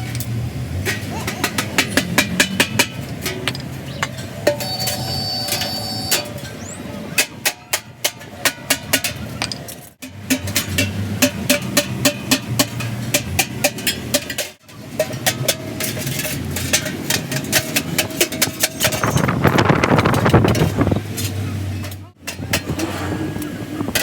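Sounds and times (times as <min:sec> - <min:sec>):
hammer on sheet metal: 0:01.3 - 0:03.4, 0:10.0 - 0:14.4.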